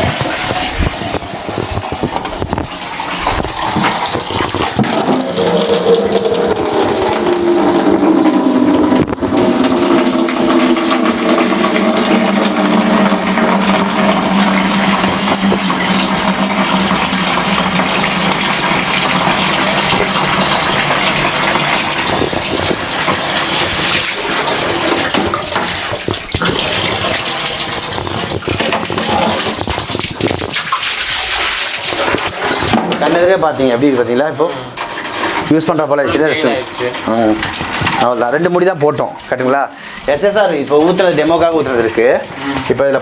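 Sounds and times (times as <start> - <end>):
water rushing over floor tiles: 0.0 - 43.0.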